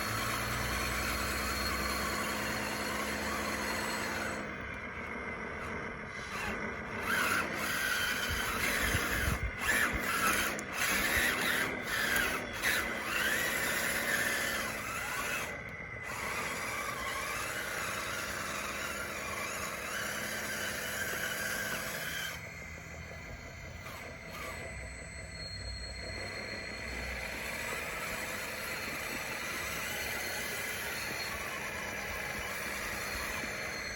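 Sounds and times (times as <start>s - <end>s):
electric motors whining: 0.0s - 33.9s
rasping and scraping: 5.6s - 22.4s.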